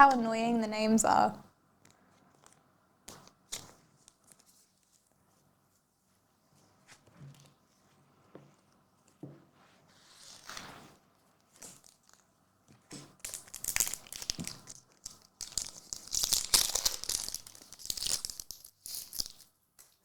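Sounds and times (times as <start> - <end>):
card pack wrapper crinkling and tearing: 13.2 - 19.5.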